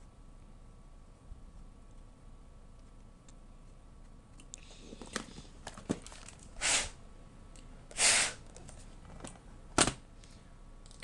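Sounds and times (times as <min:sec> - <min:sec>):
puffs of breath: 0:06.6 - 0:07.0, 0:07.9 - 0:08.4.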